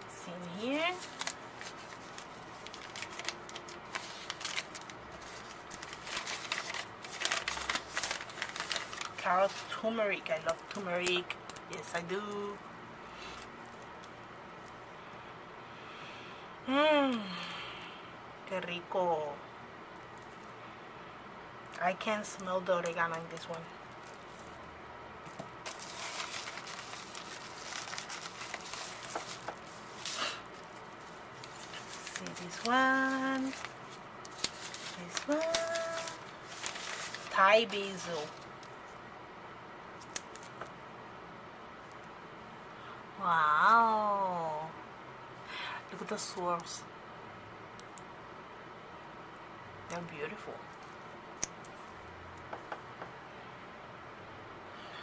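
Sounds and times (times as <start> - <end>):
soap wrapper rustling and crinkling: 0.9 - 11.8, 25.3 - 38.9.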